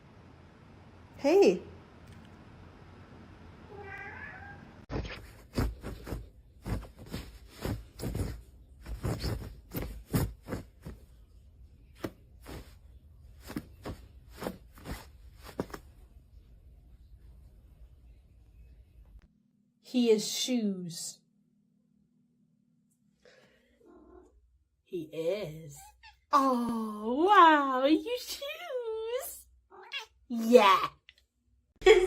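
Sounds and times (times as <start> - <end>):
cat meowing faintly: 3.7 - 4.9, 29.7 - 30.2.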